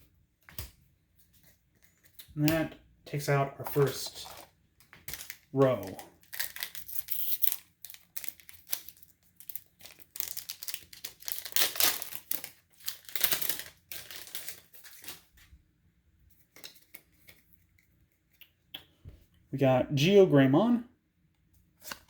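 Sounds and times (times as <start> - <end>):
foil wrapper tearing and crinkling: 5.0 - 15.3.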